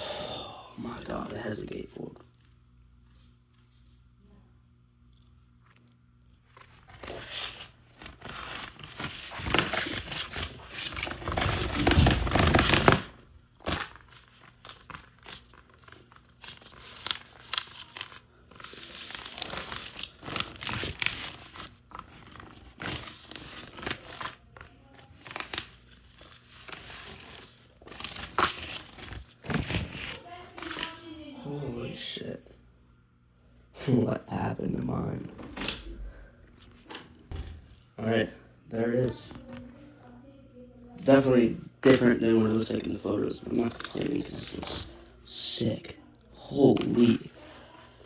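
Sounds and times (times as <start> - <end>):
plastic wrap crinkling and tearing: 6.4 - 31.1
packaging rustling and clicking: 6.5 - 31.0.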